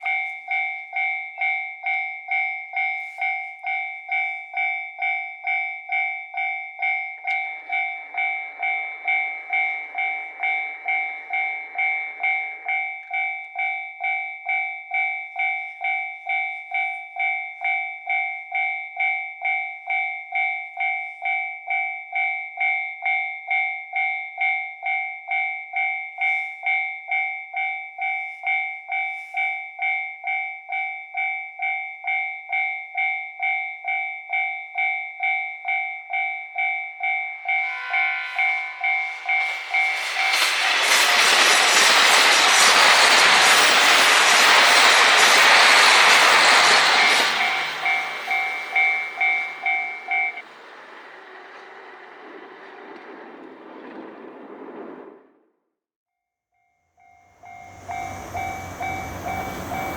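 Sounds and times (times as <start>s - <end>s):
level crossing warning bell ringing: 0.0s - 50.6s, 57.0s - 59.9s
faint rushing noise: 7.3s - 12.6s, 37.3s - 55.2s, 57.5s - 59.9s.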